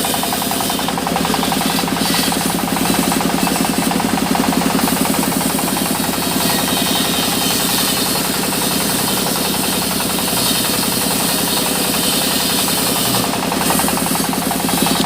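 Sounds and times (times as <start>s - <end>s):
sawmill machinery rattling: 0.0s - 15.0s.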